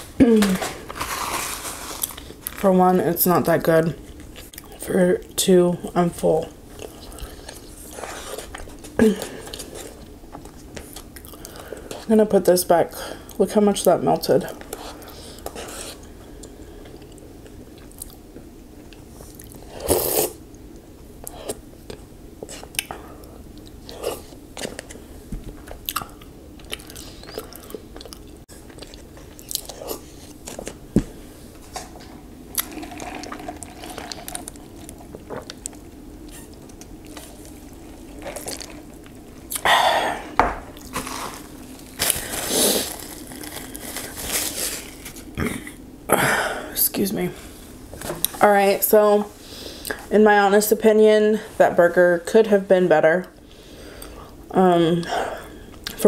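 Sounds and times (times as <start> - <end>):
person chewing and crunching food: 0.4 - 2.6, 6.7 - 12.1, 14.5 - 18.2, 21.2 - 45.8.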